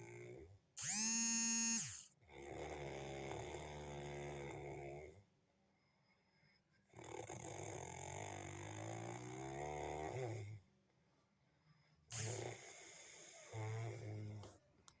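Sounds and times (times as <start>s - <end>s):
person snoring: 7.0s - 10.6s, 12.1s - 14.5s.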